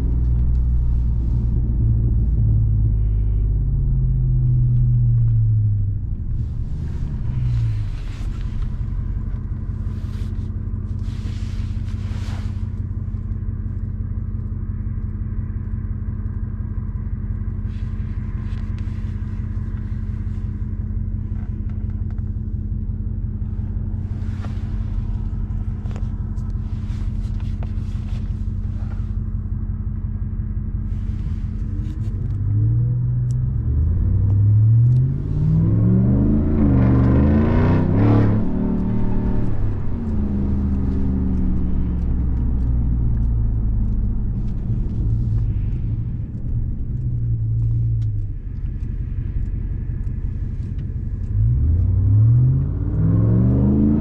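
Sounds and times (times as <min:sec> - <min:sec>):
truck engine accelerating: 0:16.0 - 0:54.0.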